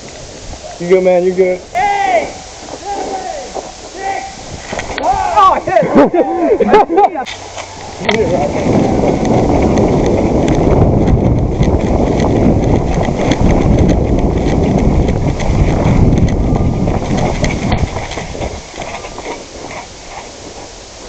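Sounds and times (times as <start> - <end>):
heavy microphone rumble: 0.0 - 21.0
rapid running footsteps: 7.3 - 21.0.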